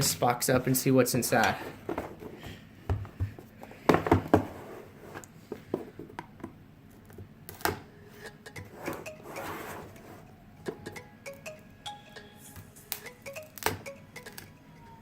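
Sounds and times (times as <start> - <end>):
soft sliding scrape: 4.5 - 5.3, 8.7 - 10.3.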